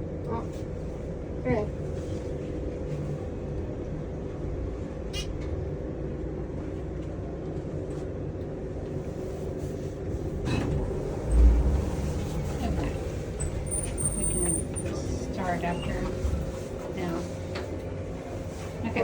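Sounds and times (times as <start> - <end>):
elevator rumble and hum: 0.0 - 19.0.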